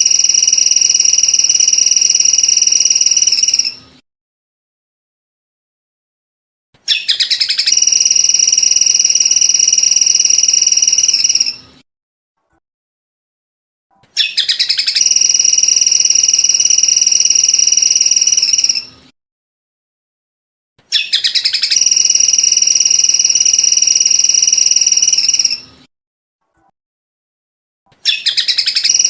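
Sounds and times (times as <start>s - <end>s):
bird song with high trill: 6.9s - 11.7s, 14.2s - 18.9s, 20.9s - 25.7s, 28.0s - 29.0s.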